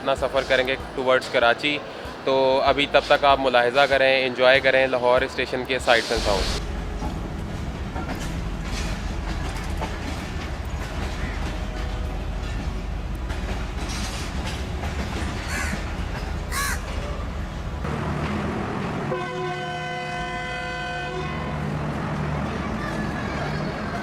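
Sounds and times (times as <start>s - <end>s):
locomotive rumbling: 0.0s - 24.0s
locomotive horn blast: 18.7s - 21.8s.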